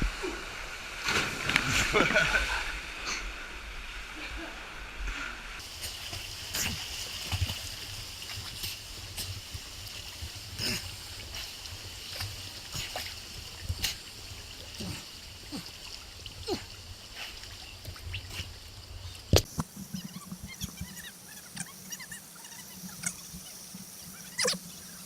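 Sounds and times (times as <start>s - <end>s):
water splashes and clicks: 1.0s - 2.2s, 17.2s - 21.8s.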